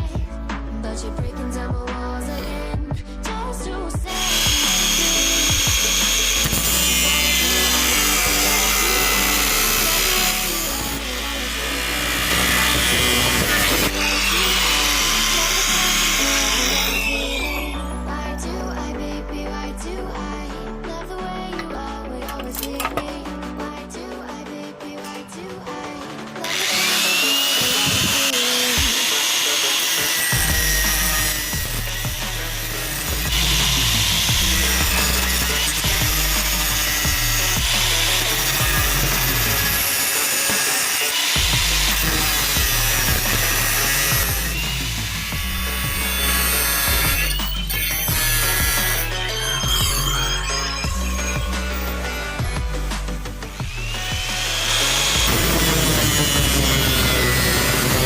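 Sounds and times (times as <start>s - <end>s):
electric grinder on steel: 4.1s - 17.9s, 26.4s - 58.0s.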